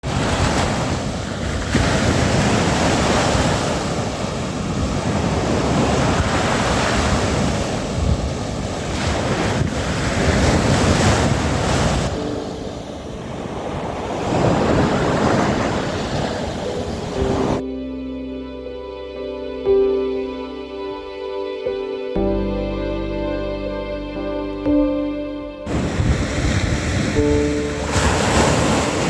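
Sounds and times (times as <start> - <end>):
sea waves washing: 0.0 - 17.6, 25.7 - 29.0
wind buffeting microphone: 0.0 - 17.6, 25.7 - 29.0.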